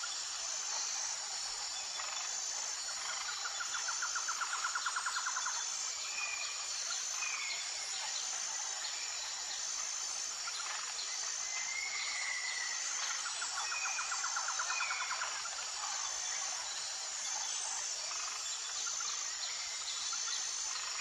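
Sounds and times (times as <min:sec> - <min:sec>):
insect high trill: 0:00.1 - 0:08.0.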